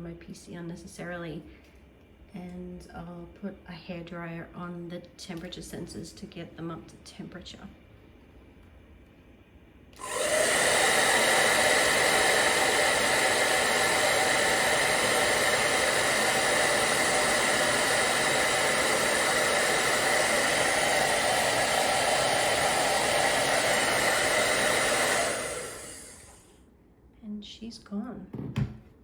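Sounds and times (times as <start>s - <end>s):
hairdryer running: 10.0s - 26.5s.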